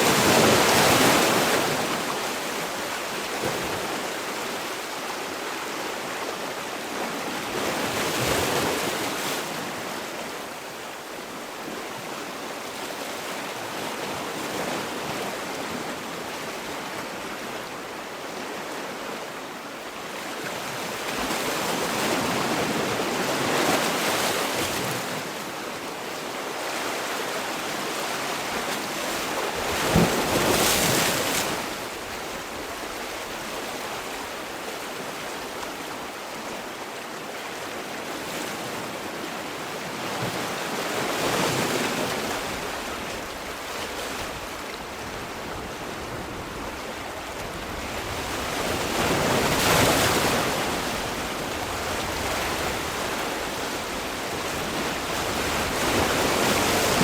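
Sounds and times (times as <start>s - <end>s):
sea waves breaking on shore: 0.0s - 57.0s.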